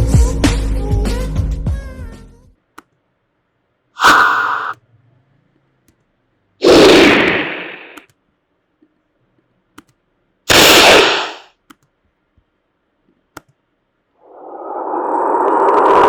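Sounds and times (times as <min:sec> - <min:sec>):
whoosh: 0:04.0 - 0:04.8, 0:06.6 - 0:08.0, 0:14.2 - 0:16.0.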